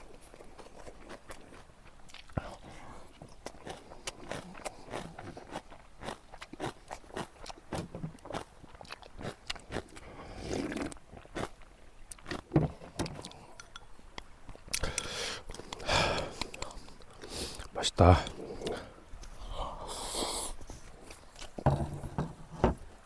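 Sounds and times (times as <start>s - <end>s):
crunching and chewing: 0.0s - 22.1s.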